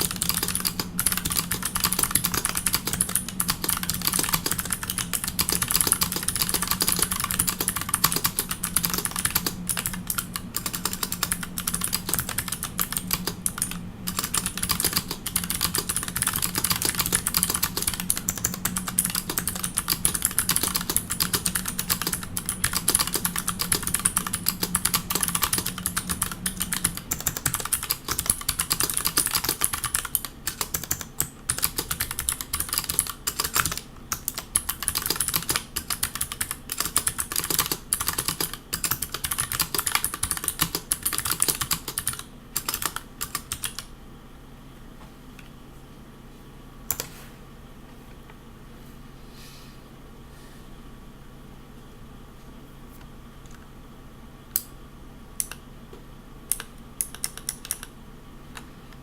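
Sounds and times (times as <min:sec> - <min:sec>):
fast typing on mechanical keyboard: 0:00.0 - 0:43.9, 0:56.5 - 0:57.9.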